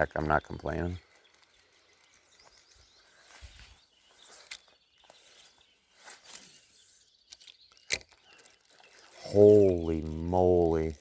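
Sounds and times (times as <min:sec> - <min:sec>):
faint footsteps on a bank: 0:01.0 - 0:06.3.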